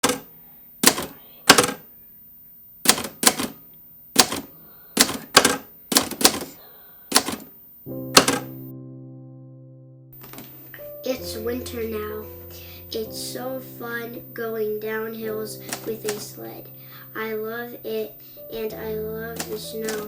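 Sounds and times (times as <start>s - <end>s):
typewriter keys clacking: 0.0s - 1.8s, 2.9s - 3.6s, 4.2s - 7.5s, 8.1s - 8.6s, 15.6s - 16.4s, 19.3s - 20.0s
sustained musical chord: 7.9s - 10.2s.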